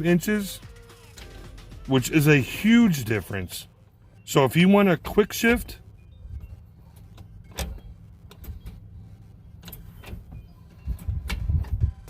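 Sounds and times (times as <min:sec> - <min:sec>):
low rumble: 0:05.6 - 0:12.0
gear shifter clicks and knocks: 0:09.6 - 0:12.0.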